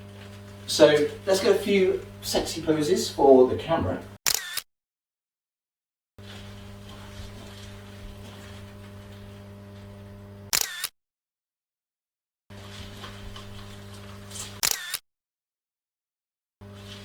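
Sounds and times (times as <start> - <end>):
low electrical hum: 0.0 - 4.2, 6.2 - 10.5
camera shutter clicks: 4.3 - 4.7, 10.5 - 10.9, 14.4 - 15.0.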